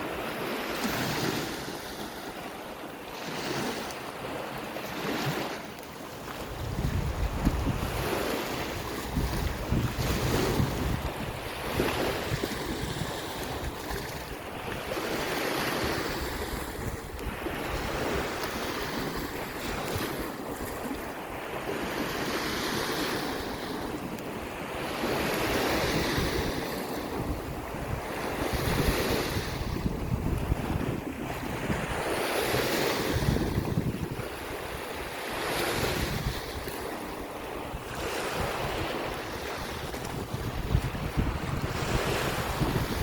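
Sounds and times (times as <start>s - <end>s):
waves washing onto shore: 0.0s - 43.0s
wind buffeting microphone: 6.2s - 43.0s.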